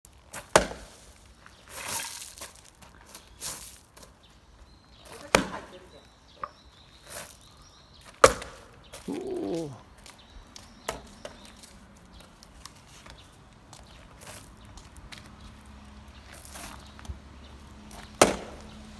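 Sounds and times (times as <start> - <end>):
axe splitting firewood: 0.3 - 1.0, 5.2 - 5.7, 8.2 - 8.6, 18.1 - 18.6.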